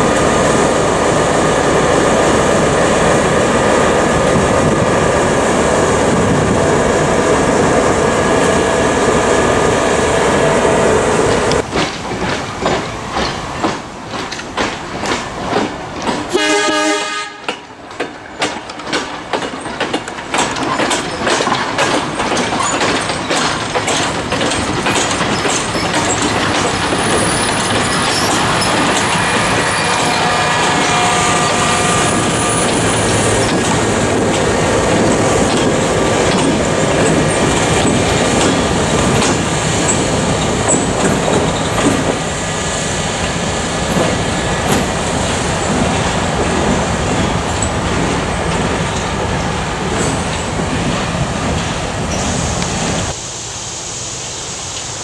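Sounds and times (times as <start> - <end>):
train wheels clicking over rail joints: 11.3 - 16.4, 17.2 - 53.2
train horn: 16.3 - 17.6, 28.9 - 33.1.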